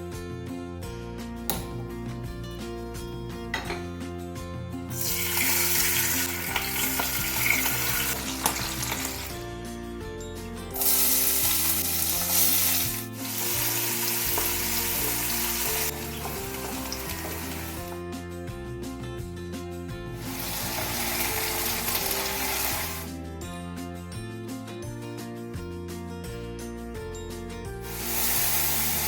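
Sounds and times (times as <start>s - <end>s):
background music: 0.0s - 29.0s
fish sizzling in hot oil: 5.0s - 9.4s, 10.7s - 18.0s, 20.2s - 23.1s, 27.8s - 29.0s.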